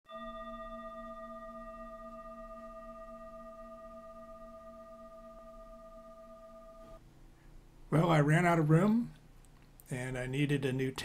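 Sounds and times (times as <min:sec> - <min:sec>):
struck metal bell ringing: 0:00.0 - 0:07.0.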